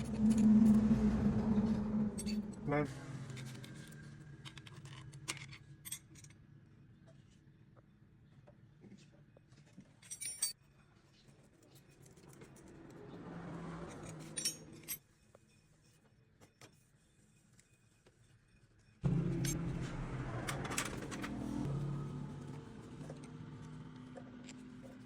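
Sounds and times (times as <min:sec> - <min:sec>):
soft rushing swell: 0:00.0 - 0:04.2.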